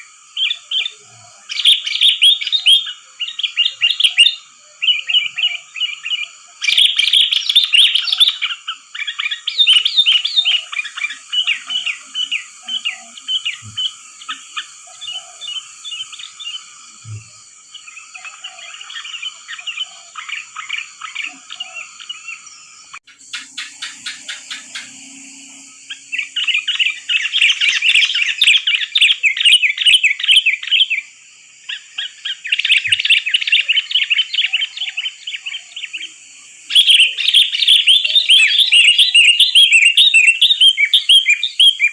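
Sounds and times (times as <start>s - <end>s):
bulbuls chattering and calling: 0.0s - 41.9s
high-pitched whine: 9.7s - 29.0s.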